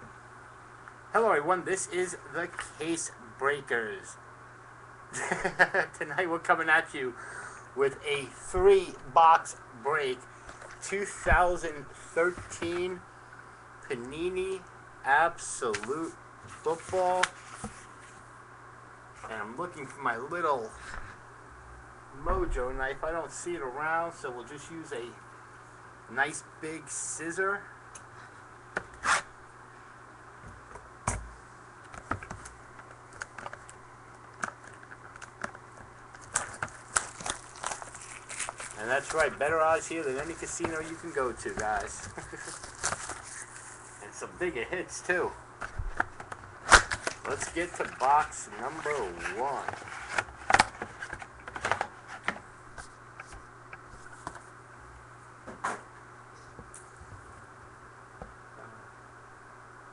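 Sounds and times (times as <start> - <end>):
low steady hum: 0.0 - 59.9
card box and plastic wrap handled: 36.1 - 44.0, 46.0 - 52.3.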